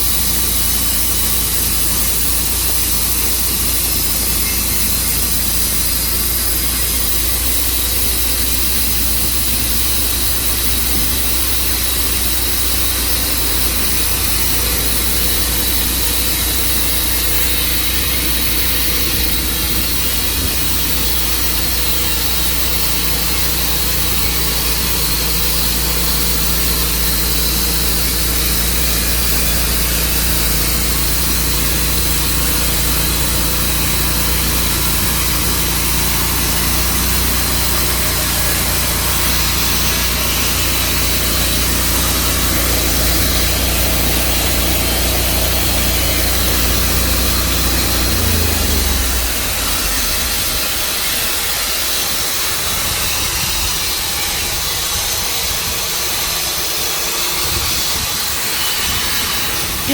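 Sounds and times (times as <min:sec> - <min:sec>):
sawmill engine drone: 0:00.0 - 0:59.9.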